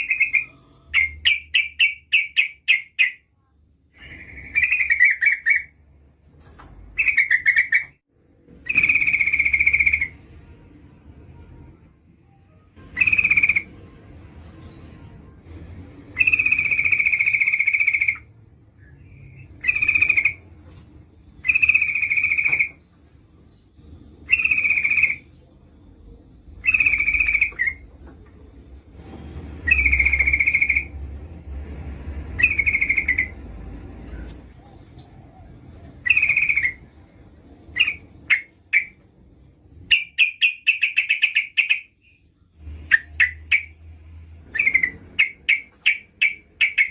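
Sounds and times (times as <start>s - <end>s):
bird calling and chattering: 7.0s - 8.0s, 8.7s - 10.2s, 19.2s - 20.5s, 26.6s - 27.8s, 32.4s - 33.4s, 34.6s - 36.9s, 37.7s - 39.0s, 39.9s - 42.2s, 42.8s - 43.8s, 44.5s - 46.9s.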